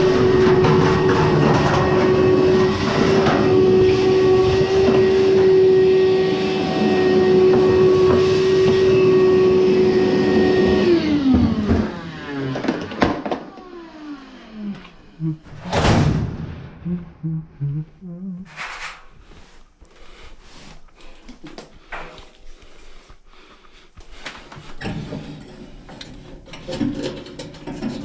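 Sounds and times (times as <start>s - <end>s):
clothes dryer running: 0.0s - 15.3s.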